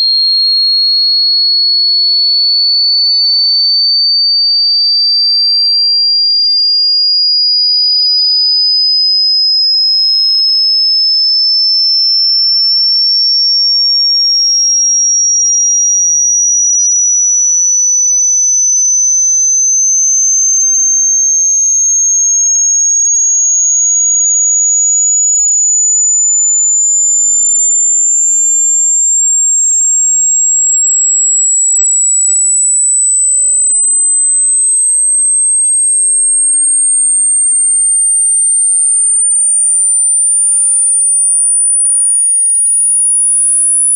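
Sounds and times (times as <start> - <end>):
rising sine tone sweep: 9.4 - 43.9.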